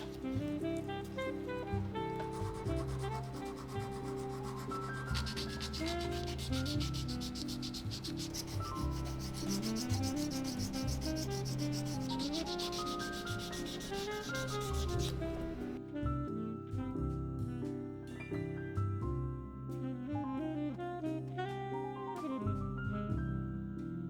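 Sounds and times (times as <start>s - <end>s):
sandpaper rubbing strokes: 0.0s - 15.8s
background music: 0.0s - 24.0s.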